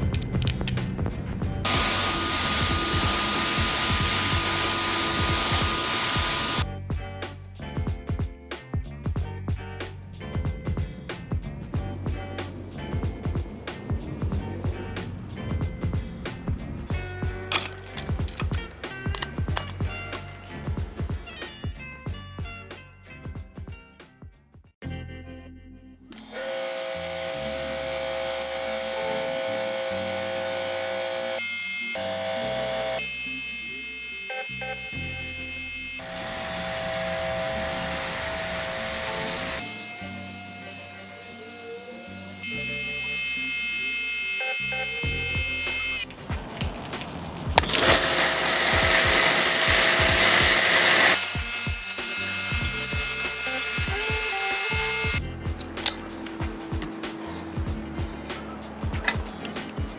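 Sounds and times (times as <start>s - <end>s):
background music with beat: 0.0s - 25.3s, 44.6s - 59.9s
pressure washer motor whine: 1.6s - 6.7s, 12.0s - 15.1s, 16.3s - 21.4s, 26.1s - 59.9s
spray hissing: 1.7s - 6.6s, 17.5s - 21.4s, 26.2s - 31.4s, 39.6s - 59.9s.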